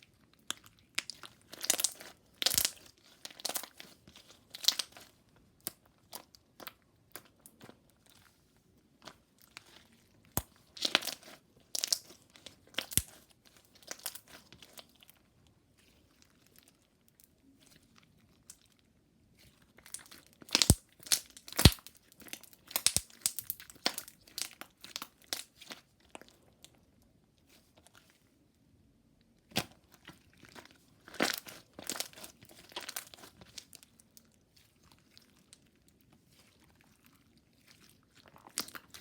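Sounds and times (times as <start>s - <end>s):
slime popping and crackling: 0.4s - 3.8s, 4.5s - 5.0s, 10.3s - 13.2s, 19.9s - 25.8s.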